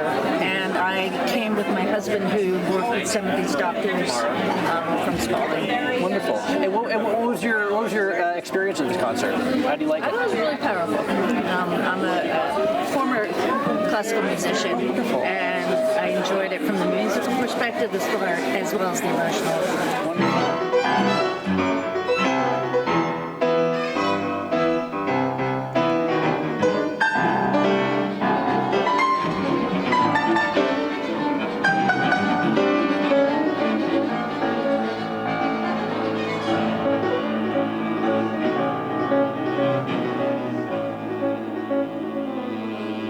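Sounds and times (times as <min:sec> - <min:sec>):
piano: 0:19.1 - 0:43.0
bowed strings: 0:20.0 - 0:43.0.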